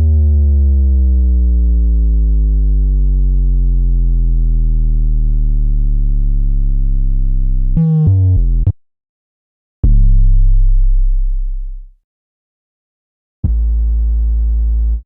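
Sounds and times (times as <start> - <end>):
deep bass tone sinking in pitch: 0.0 - 8.8, 9.8 - 12.0, 13.4 - 15.0
quick stepped bass notes: 7.6 - 8.8, 13.5 - 15.0.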